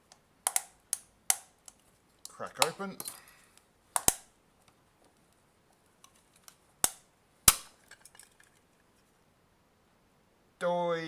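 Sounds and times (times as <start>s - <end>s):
small plastic ticks: 0.1s - 2.8s
plastic case cracking: 0.5s - 1.5s, 2.3s - 3.4s, 4.0s - 4.3s, 6.1s - 8.5s.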